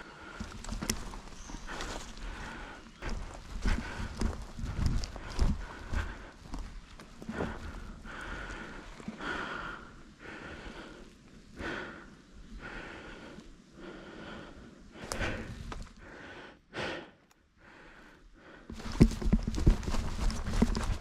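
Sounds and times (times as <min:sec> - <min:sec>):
rustling of movement: 0:00.0 - 0:16.2, 0:18.4 - 0:21.0
person breathing hard: 0:00.0 - 0:21.0.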